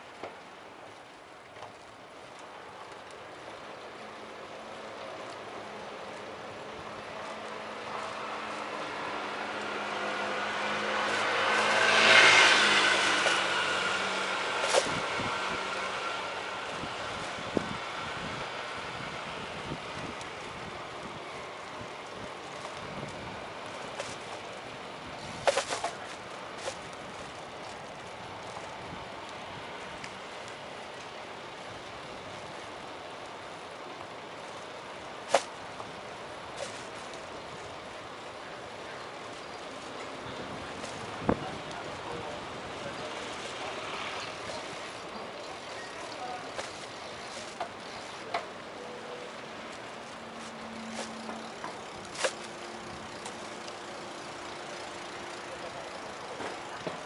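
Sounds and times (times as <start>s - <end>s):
bicycle riding noise: 0.0s - 57.0s
car passing by: 6.8s - 20.1s, 40.0s - 57.0s.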